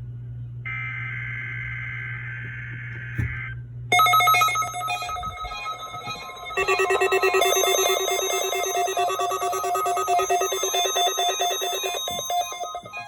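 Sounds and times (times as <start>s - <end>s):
pulsing electronic alert tones: 3.9s - 13.0s.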